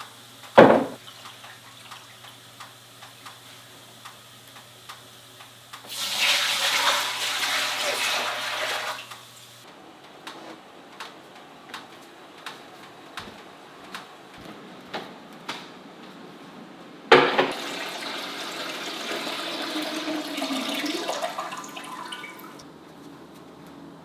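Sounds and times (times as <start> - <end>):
water dripping: 0.4 - 9.6, 17.5 - 22.6
water pouring: 5.9 - 9.6, 17.5 - 22.6.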